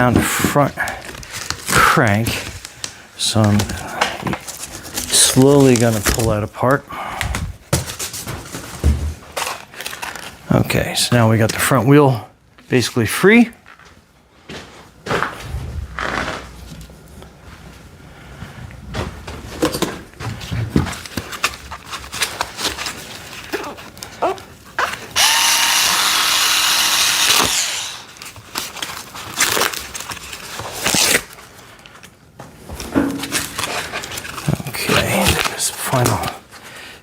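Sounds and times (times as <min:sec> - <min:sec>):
cardboard and packing material rustling: 0:00.0 - 0:10.8, 0:18.9 - 0:25.2, 0:27.4 - 0:36.7.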